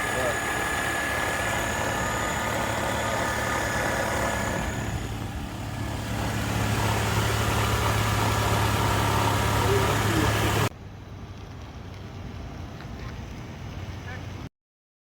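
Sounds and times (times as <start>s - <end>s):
high whine: 0.0s - 10.7s
car engine idling: 0.0s - 14.4s.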